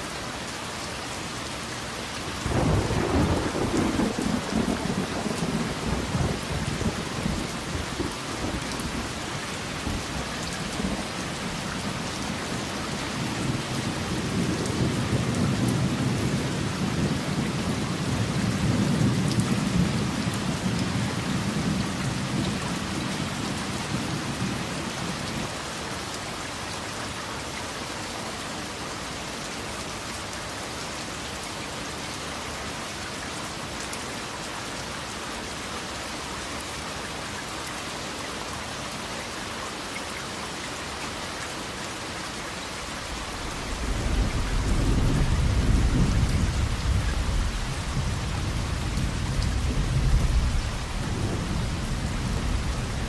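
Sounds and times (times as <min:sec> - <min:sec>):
steady rain: 0:00.0 - 0:53.0
rolling thunder: 0:43.0 - 0:53.0.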